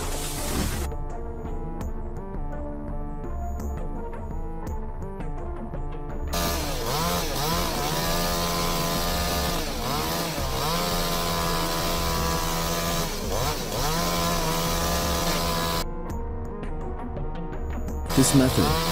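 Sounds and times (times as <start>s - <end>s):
chainsaw cutting wood: 0.0s - 0.9s, 6.3s - 15.8s, 18.1s - 18.9s
background music: 0.0s - 18.9s.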